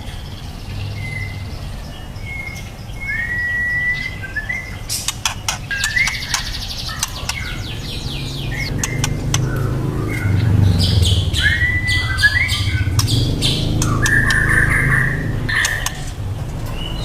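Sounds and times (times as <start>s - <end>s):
bird singing with whistles and trills: 0.0s - 17.0s
low rumble: 7.2s - 17.0s.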